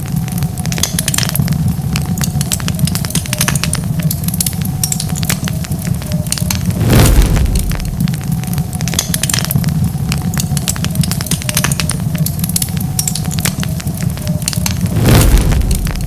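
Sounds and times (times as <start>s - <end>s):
wood fire crackling and popping: 0.0s - 16.0s
rush of noise: 6.6s - 8.2s, 14.8s - 16.0s.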